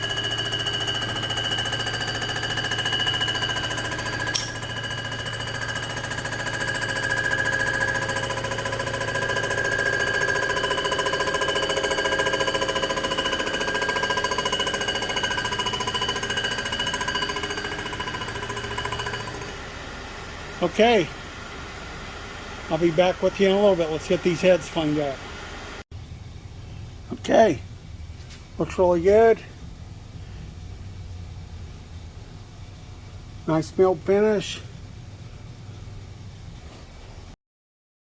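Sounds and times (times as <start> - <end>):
milling machine whine: 0.0 - 25.8
sharp click: 4.3 - 4.6.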